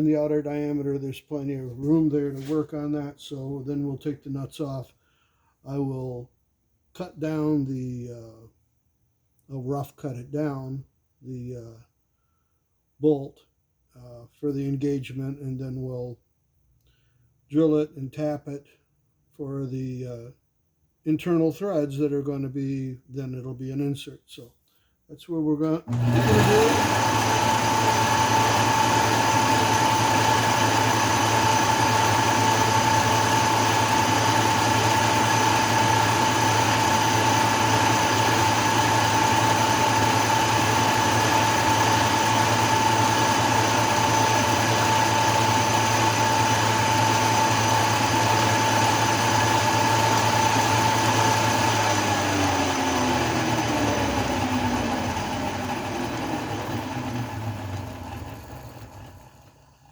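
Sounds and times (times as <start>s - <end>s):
metal lathe whining: 25.9s - 59.7s.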